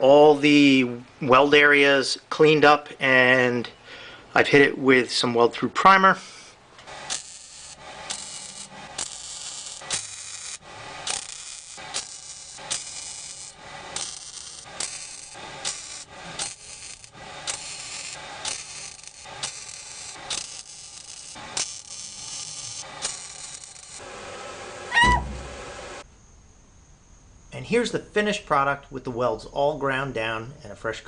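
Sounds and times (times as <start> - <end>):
welder crackling bursts: 6.0 - 26.0.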